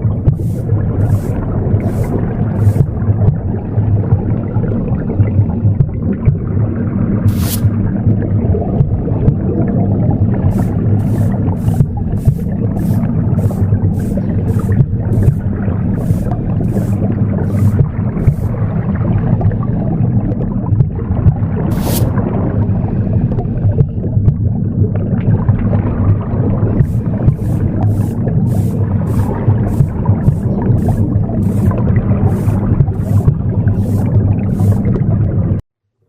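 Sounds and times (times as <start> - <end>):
womb sound whooshing rumble: 0.0 - 4.3, 10.4 - 18.9, 26.8 - 35.2
broom sweeping: 0.2 - 3.0, 7.3 - 7.8, 10.5 - 18.6, 21.7 - 22.1, 26.8 - 35.0.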